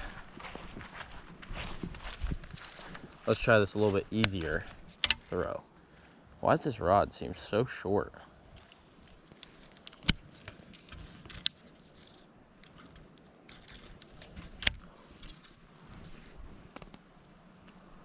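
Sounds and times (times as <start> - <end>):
faint ticks and rustling: 0.0 - 6.4, 8.2 - 17.9.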